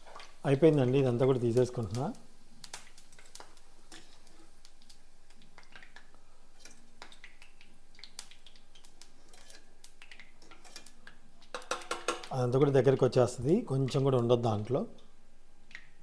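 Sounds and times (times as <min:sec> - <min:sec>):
faint steady hiss: 0:00.0 - 0:16.0
metal spoon scraping frying pan: 0:03.9 - 0:04.5, 0:09.2 - 0:09.7, 0:10.4 - 0:12.3.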